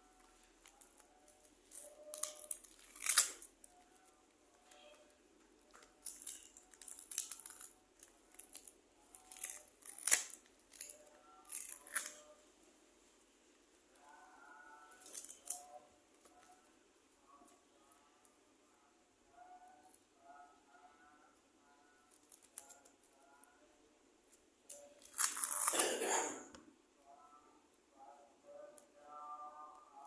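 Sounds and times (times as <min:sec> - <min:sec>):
scissors snipping paper: 0:00.1 - 0:03.7.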